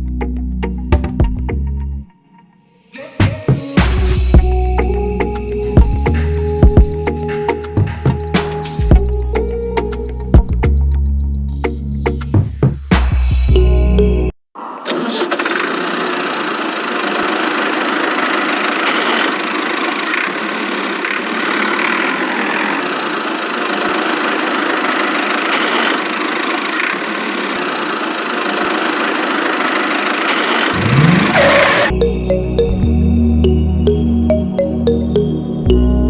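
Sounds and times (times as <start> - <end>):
small motor rattling: 14.9 - 31.9.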